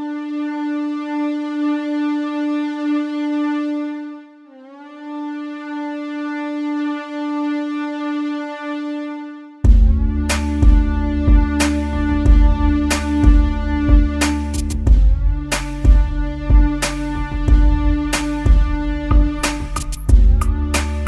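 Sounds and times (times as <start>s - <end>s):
long electronic note: 0.0s - 21.0s
band playing loud hits: 9.7s - 21.0s.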